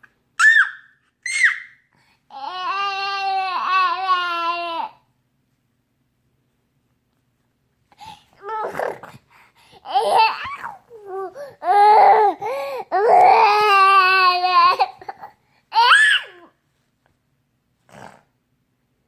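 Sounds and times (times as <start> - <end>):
baby babbling: 2.3 - 5.0, 8.4 - 9.2, 9.8 - 16.5.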